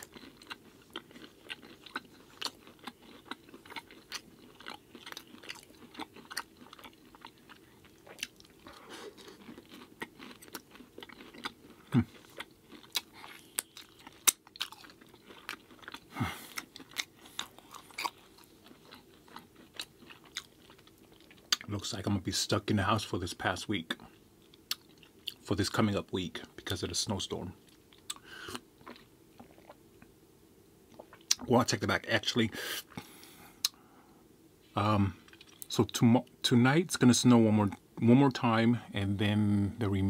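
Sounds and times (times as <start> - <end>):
person chewing food: 0.0 - 21.7, 23.9 - 25.4, 27.6 - 30.1, 30.9 - 31.4, 35.2 - 35.7.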